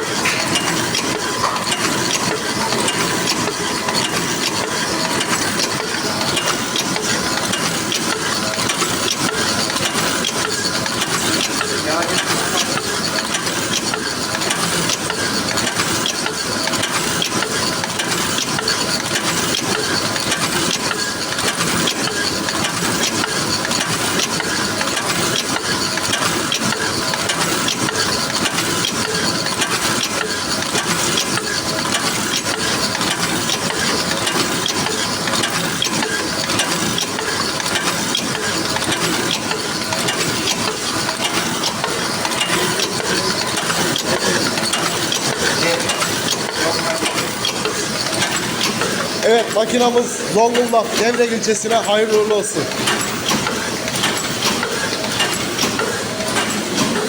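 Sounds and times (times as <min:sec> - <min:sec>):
machine clattering: 0:00.0 - 0:57.0.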